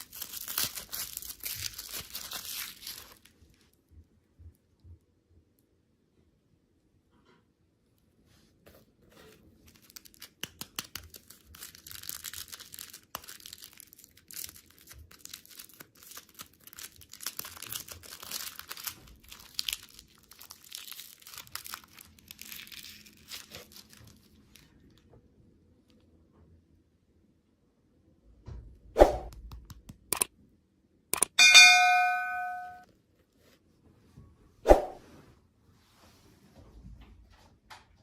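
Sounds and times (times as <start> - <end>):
packaging crinkling and ripping: 0.0 - 3.4, 9.6 - 25.0.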